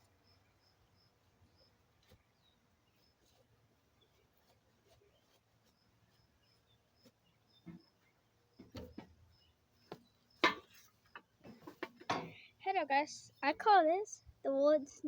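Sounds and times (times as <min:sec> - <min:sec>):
soft knocks: 0:08.6 - 0:09.2.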